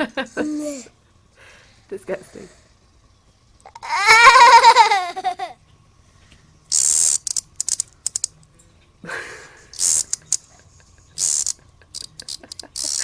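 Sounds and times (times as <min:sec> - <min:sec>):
cicada buzzing: 0:06.7 - 0:08.3, 0:09.8 - 0:10.4, 0:11.2 - 0:13.0
cicada clicks: 0:06.7 - 0:08.4, 0:09.8 - 0:10.5, 0:11.2 - 0:13.0.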